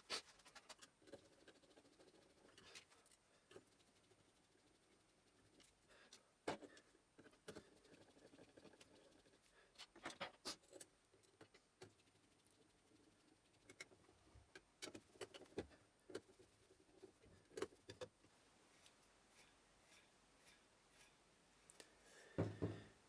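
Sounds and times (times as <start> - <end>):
small parts clicking and tapping: 9.8 - 16.4, 17.2 - 18.2.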